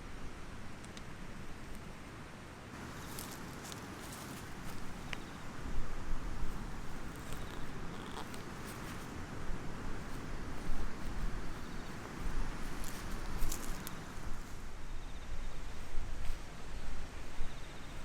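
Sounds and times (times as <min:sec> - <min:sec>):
small rustles and clicks: 0:02.8 - 0:05.6, 0:06.4 - 0:14.6
wind buffeting microphone: 0:02.9 - 0:14.8.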